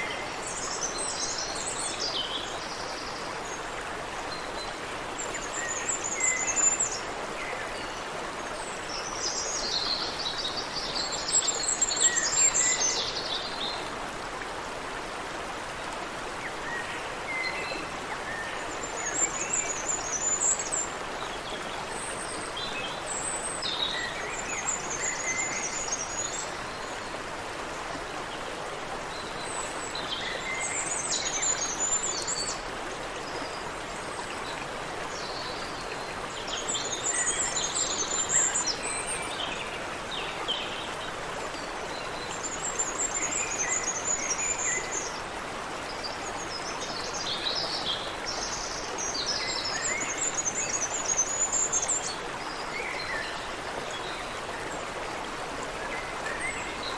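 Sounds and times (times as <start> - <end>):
stream water running: 0.0 - 56.9.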